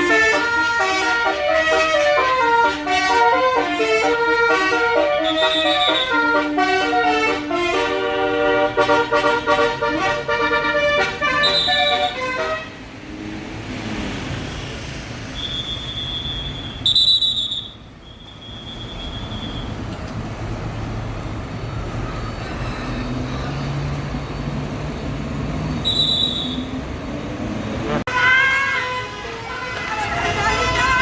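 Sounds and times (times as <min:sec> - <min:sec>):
multi-tone bus horn tune: 0:00.0 - 0:12.9, 0:27.8 - 0:31.0
bus engine running: 0:00.0 - 0:13.7, 0:19.7 - 0:28.1.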